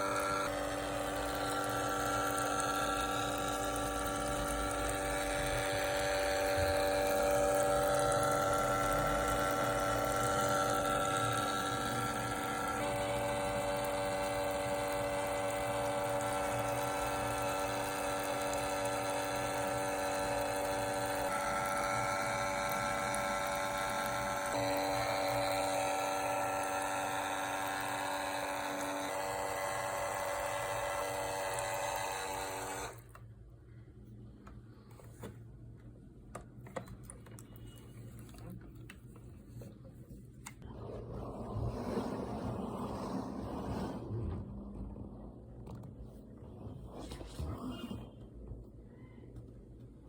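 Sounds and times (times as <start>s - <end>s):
small electric motor whining: 0.0s - 33.2s.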